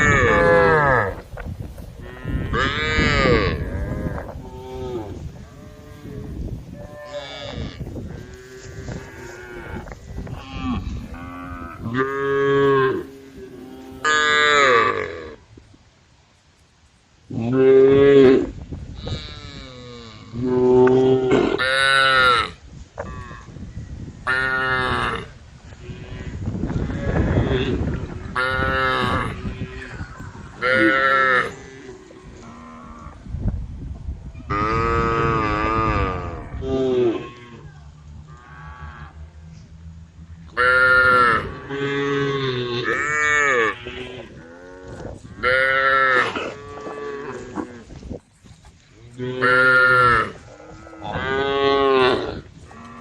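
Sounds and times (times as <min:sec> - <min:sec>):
cows mooing: 0:00.0 - 0:01.2, 0:02.0 - 0:15.4, 0:25.9 - 0:33.2, 0:34.5 - 0:48.0, 0:49.0 - 0:53.0.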